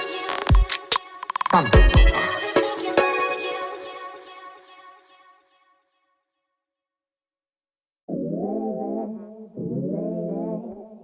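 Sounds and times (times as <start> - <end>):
music track: 0.0 - 4.3.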